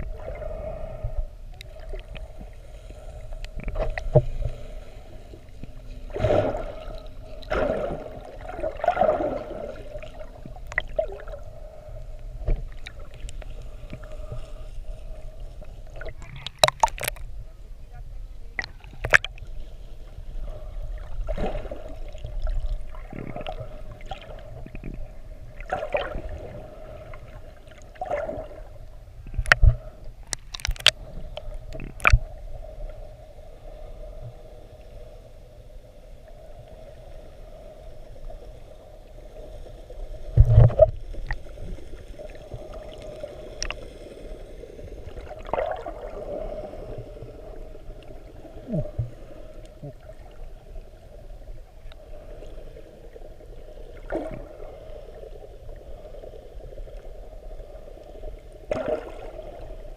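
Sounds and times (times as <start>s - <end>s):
water gurgling and sloshing: 0.0s - 59.9s.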